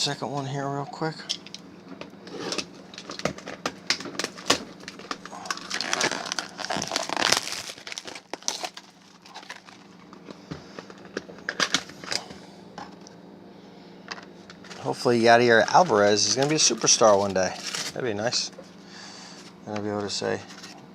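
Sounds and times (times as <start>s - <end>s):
packaging crinkling and tearing: 2.3s - 12.3s, 14.6s - 18.5s.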